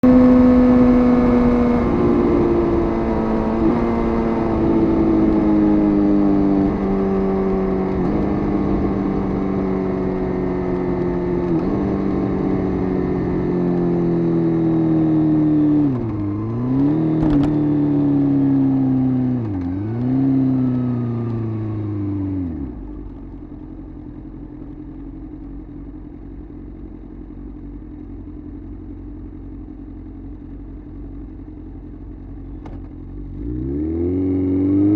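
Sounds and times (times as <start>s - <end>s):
motorcycle engine downshifting: 0.0s - 23.2s.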